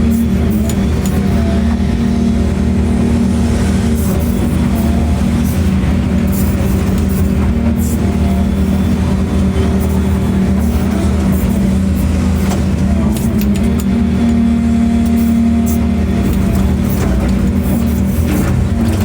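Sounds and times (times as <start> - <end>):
large engine humming steadily: 0.0 - 19.0.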